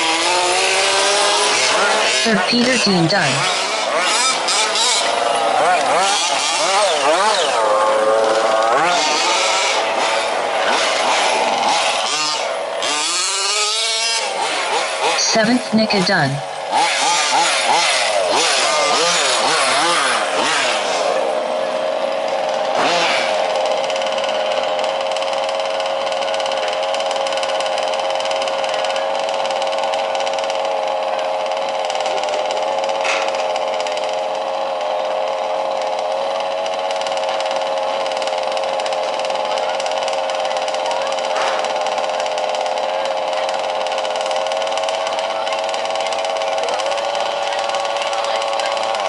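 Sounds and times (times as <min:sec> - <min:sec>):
small two-stroke engines revving: 0:00.0 - 0:49.0.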